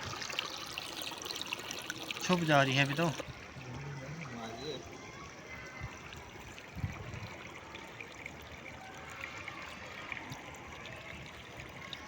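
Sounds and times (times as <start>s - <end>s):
water trickling through grass: 0.0s - 12.0s.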